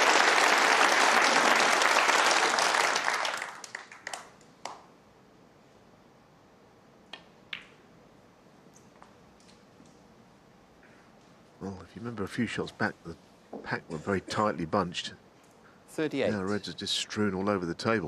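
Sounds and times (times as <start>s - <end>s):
audience applauding: 0.0s - 4.3s.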